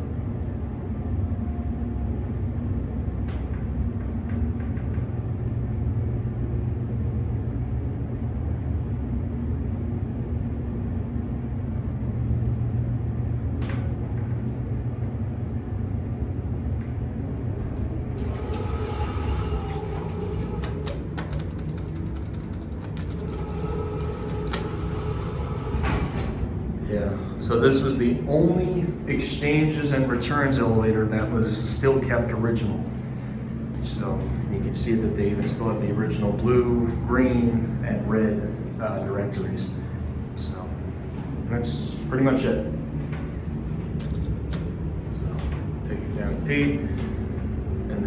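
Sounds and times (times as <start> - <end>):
elevator rumbling: 0.0 - 48.0
clicks and rattles: 20.4 - 24.8.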